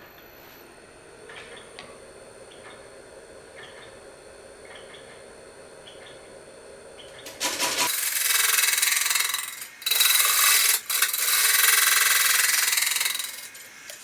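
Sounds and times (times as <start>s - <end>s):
lathe tool scraping wood: 7.3s - 13.7s.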